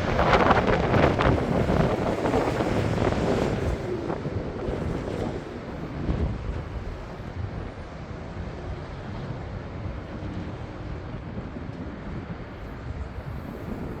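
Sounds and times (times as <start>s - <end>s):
jet engines rumbling: 0.0s - 14.0s
wind buffeting microphone: 0.0s - 14.0s.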